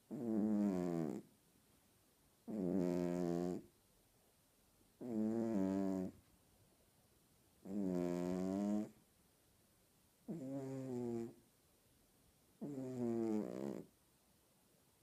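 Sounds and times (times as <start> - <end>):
cat snoring: 0.1 - 1.3, 2.4 - 3.7, 5.0 - 6.2, 7.6 - 9.0, 10.3 - 11.4, 12.6 - 13.9.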